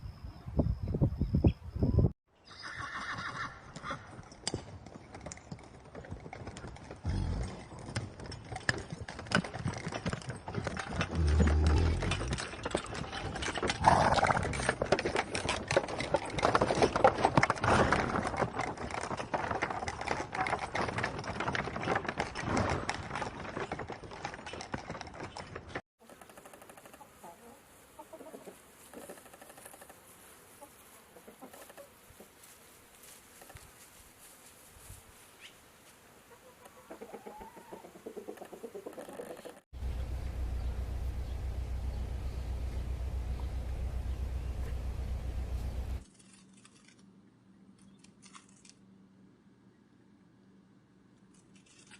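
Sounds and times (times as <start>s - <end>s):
horse whinnying: 2.5s - 4.1s
hooves clip-clopping: 3.1s - 27.0s, 38.2s - 46.0s.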